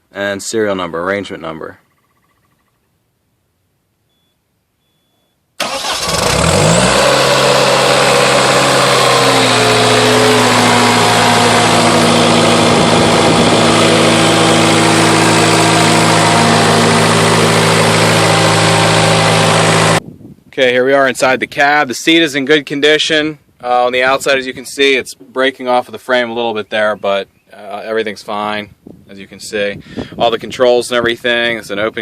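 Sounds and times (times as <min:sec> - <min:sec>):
diesel engine starting and running: 0:05.6 - 0:20.0.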